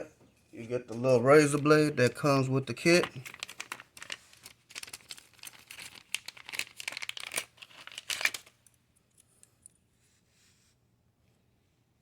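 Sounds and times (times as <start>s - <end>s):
plastic packaging crinkling: 2.8s - 8.7s.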